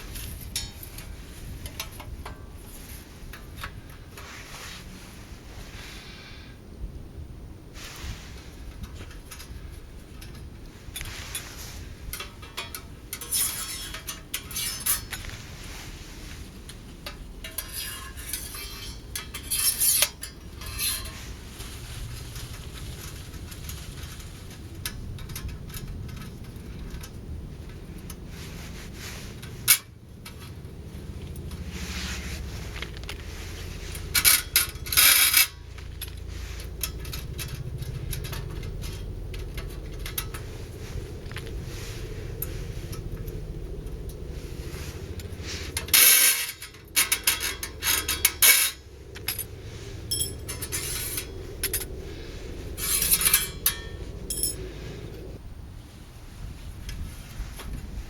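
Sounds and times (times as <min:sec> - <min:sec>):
metal parts clinking: 0:08.7 - 0:15.3, 0:16.7 - 0:55.4.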